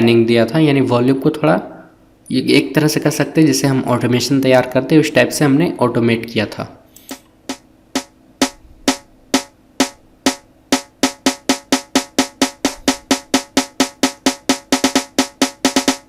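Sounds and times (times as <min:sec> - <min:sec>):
snare drum roll: 0:07.5 - 0:16.0.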